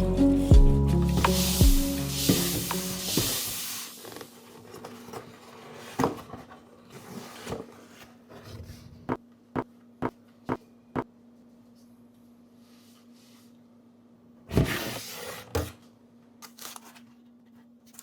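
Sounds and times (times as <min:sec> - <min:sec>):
background music: 0:00.0 - 0:03.2.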